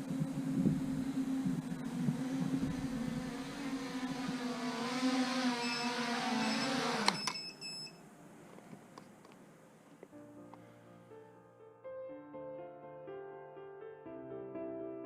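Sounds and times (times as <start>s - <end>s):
quadcopter motors whining: 0.0s - 7.4s.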